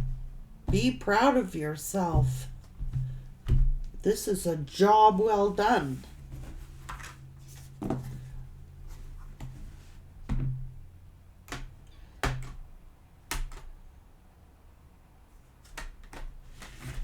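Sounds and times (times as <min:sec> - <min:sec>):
low steady hum: 0:00.0 - 0:12.0
soft handling clicks and knocks: 0:06.1 - 0:10.8.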